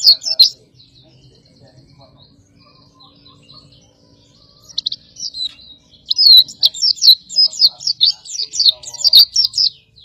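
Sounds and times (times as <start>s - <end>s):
bird singing high chirps: 0.0s - 10.0s.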